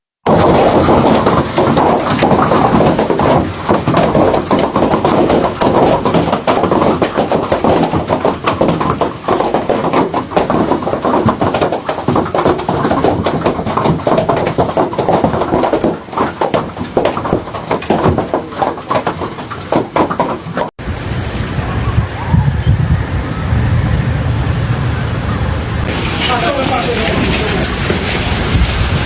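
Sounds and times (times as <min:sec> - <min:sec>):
hailstones clattering: 0:00.3 - 0:20.7, 0:25.9 - 0:29.0
storm rushing: 0:20.8 - 0:29.0.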